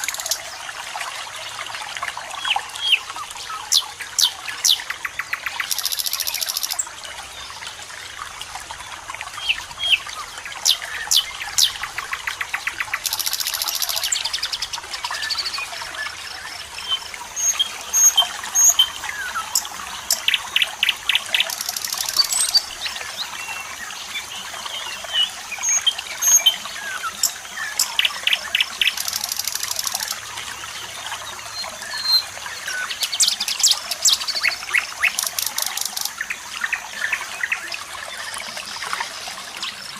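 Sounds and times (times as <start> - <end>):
trickle of running water: 0.0 - 39.9
fast rattling bird trills: 3.7 - 6.8, 12.6 - 14.5.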